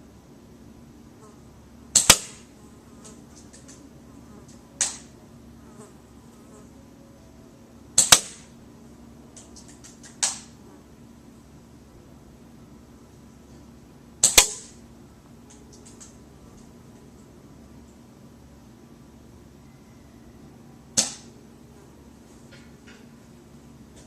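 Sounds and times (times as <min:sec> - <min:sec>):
airsoft rifle shot: 0:01.9 - 0:02.4, 0:08.0 - 0:08.5, 0:14.2 - 0:14.7, 0:21.0 - 0:21.3.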